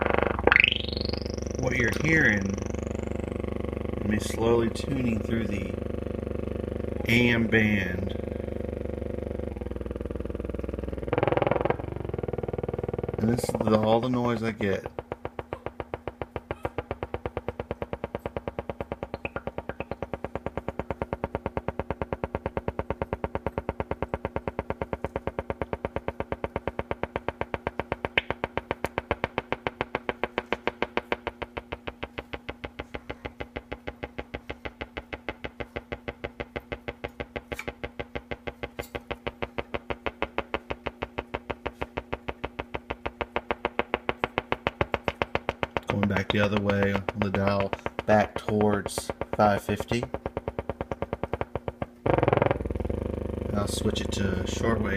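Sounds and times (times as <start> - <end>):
radio steady hum: 0.0 - 16.0, 45.7 - 50.2, 53.5 - 54.9
radio pulsing buzz: 0.0 - 16.4, 51.6 - 54.9.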